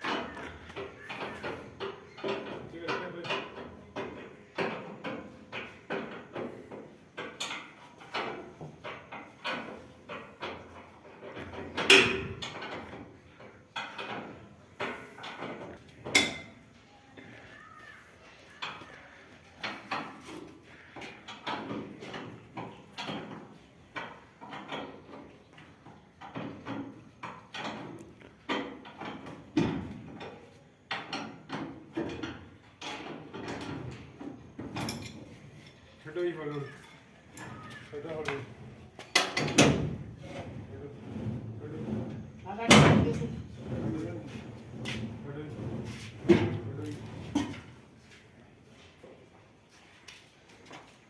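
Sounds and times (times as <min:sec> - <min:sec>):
knocks and bangs on metal parts: 0:00.0 - 0:16.6, 0:19.6 - 0:35.3, 0:39.0 - 0:40.2, 0:41.0 - 0:44.1.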